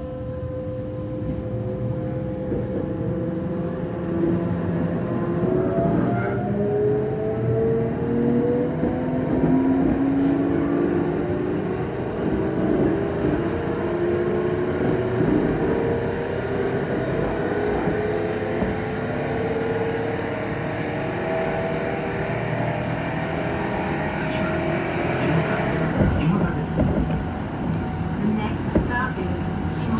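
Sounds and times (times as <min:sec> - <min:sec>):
train running rumble: 0:00.0 - 0:06.2, 0:08.3 - 0:21.6, 0:23.6 - 0:29.9
train traction motors whining: 0:22.2 - 0:29.9.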